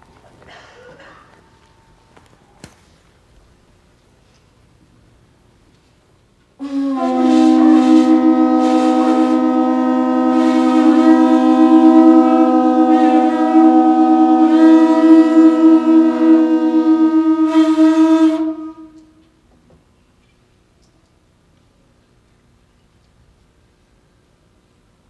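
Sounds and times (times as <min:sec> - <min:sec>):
conch shell trumpets blowing: 0:06.6 - 0:19.3.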